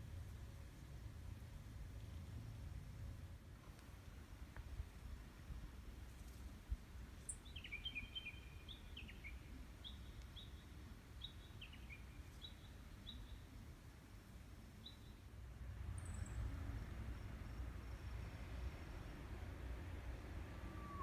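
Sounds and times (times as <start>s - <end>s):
low background rumble: 0.0s - 7.5s, 9.4s - 21.0s
bird singing whistled notes: 7.3s - 10.6s, 20.5s - 21.0s.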